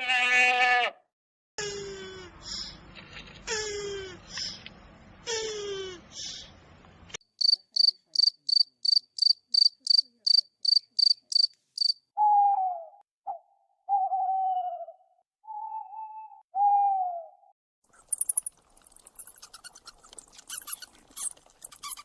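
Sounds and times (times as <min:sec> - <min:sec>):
cricket chirping: 0:07.4 - 0:12.0, 0:18.1 - 0:19.3.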